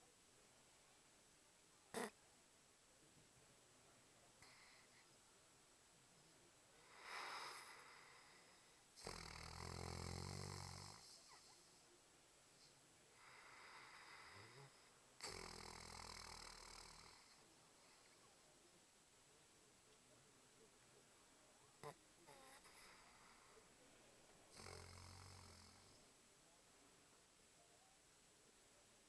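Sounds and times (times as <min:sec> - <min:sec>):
pet snoring with low buzz: 0:02.0 - 0:02.2, 0:04.4 - 0:05.0, 0:06.8 - 0:11.9, 0:12.6 - 0:18.3, 0:21.8 - 0:23.7, 0:24.5 - 0:26.2
soft breathy breath: 0:04.3 - 0:05.2, 0:06.1 - 0:09.2, 0:10.8 - 0:15.4, 0:16.6 - 0:18.6, 0:21.8 - 0:26.2.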